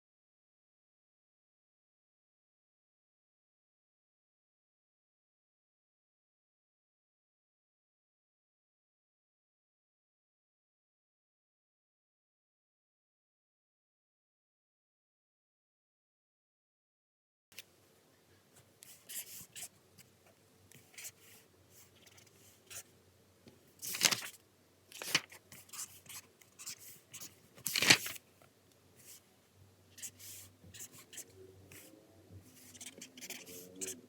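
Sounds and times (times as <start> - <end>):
sharp paper or desk sounds: 23.8 - 26.0, 26.6 - 28.2
paper rustling: 23.8 - 28.2
pen writing on paper: 32.6 - 34.0.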